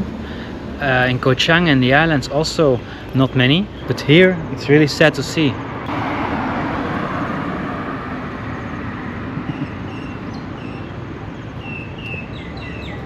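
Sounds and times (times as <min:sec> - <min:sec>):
vehicle rumble: 0:00.0 - 0:13.0.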